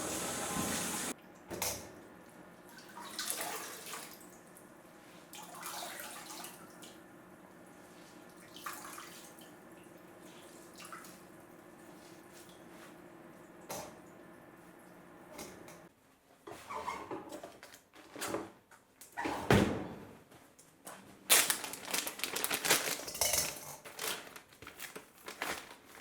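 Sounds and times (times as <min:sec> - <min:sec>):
water running from tap: 0:00.0 - 0:01.2
water splashes and drips: 0:02.7 - 0:04.4, 0:08.3 - 0:11.3.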